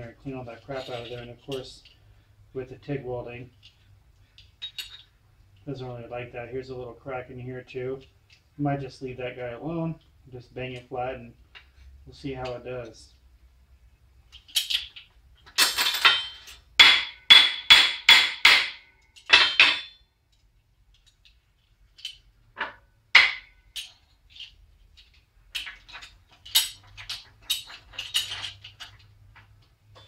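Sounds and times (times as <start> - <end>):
hammer striking metal: 16.0 - 20.0, 23.2 - 23.6.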